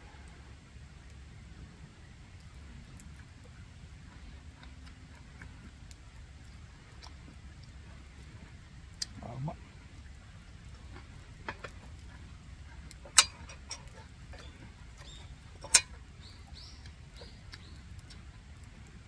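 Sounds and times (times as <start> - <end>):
faint high bird chirps: 16.2 - 17.8.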